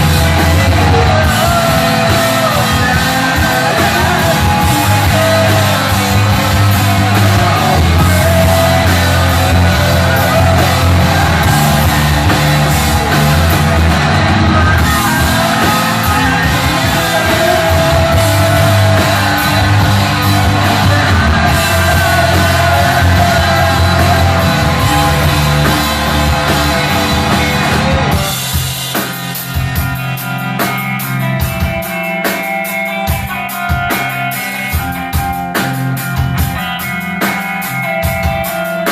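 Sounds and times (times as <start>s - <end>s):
person singing: 0.0s - 28.6s
drum hits: 0.0s - 29.9s
ringing guitar: 0.0s - 38.9s
rock band playing live: 0.0s - 38.9s.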